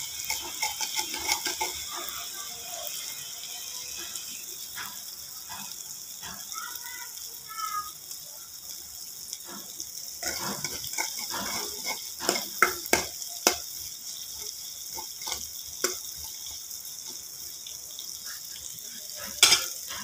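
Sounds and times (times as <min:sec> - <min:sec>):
utensils clinking and knocking: 0:00.0 - 0:02.1, 0:19.3 - 0:20.0.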